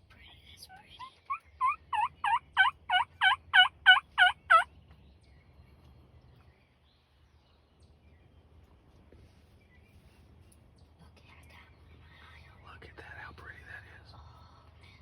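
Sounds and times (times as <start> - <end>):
wild turkey yelping: 1.0 - 4.7.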